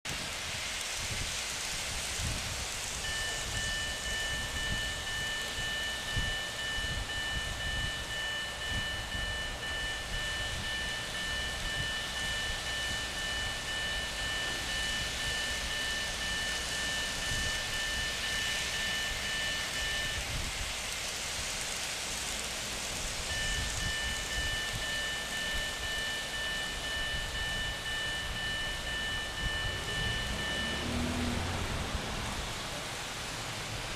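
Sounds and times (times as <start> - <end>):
steady hiss: 0.1 - 33.9
level crossing alarm two-note tone: 3.0 - 20.4, 23.2 - 31.7.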